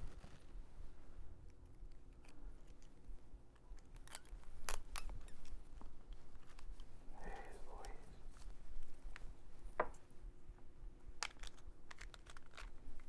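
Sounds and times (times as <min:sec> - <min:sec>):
scissors snipping: 0:11.2 - 0:12.8.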